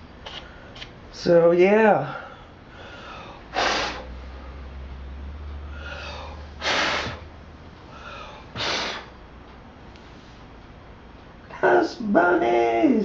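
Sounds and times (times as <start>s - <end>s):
short puffs of air: 2.8s - 4.6s, 5.7s - 7.3s, 7.9s - 9.2s.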